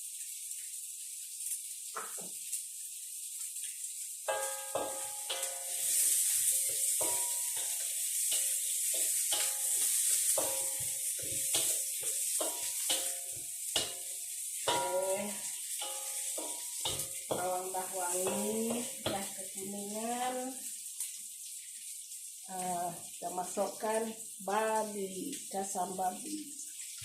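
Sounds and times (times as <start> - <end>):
vegetables sizzling in hot oil: 0.0 - 27.0
spatula scraping and clinking pan: 4.3 - 19.6.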